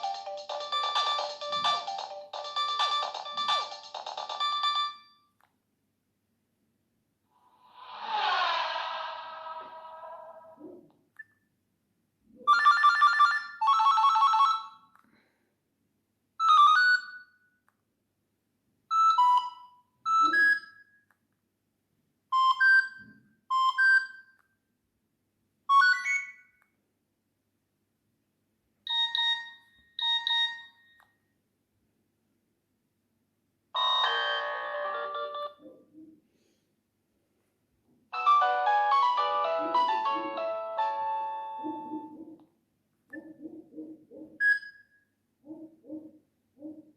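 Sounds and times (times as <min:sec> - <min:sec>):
phone ringtone chime notes: 0:33.8 - 0:35.6.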